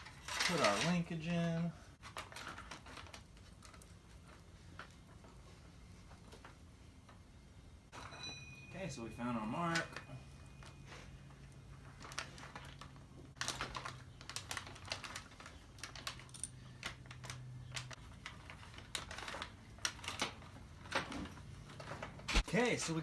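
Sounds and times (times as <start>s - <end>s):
metallic chain clicks and clinks: 16.0s - 16.6s.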